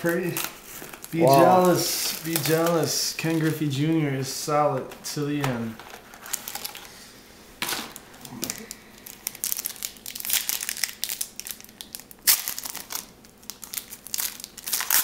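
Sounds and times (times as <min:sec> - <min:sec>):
wrapper ripping: 0:00.0 - 0:03.8, 0:05.8 - 0:06.9, 0:07.6 - 0:15.0
wrapper crinkling and crackling: 0:00.0 - 0:04.0, 0:05.8 - 0:06.9, 0:07.7 - 0:15.0.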